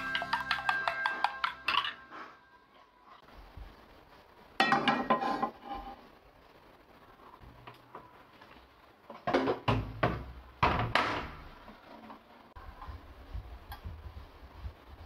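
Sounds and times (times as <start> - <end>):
knocks of household objects: 4.6 - 5.5, 9.2 - 11.4.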